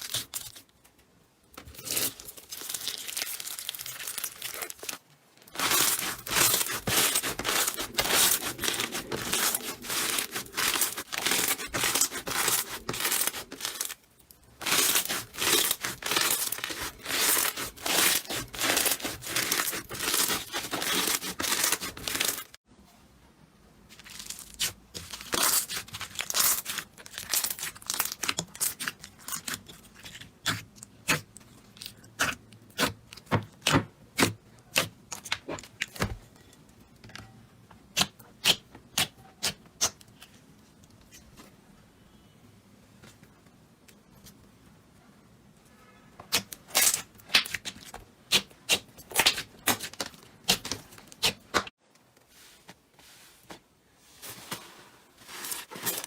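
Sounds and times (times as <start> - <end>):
slime crackling and popping by hand: 1.8 - 22.6, 23.9 - 33.3, 46.3 - 51.7.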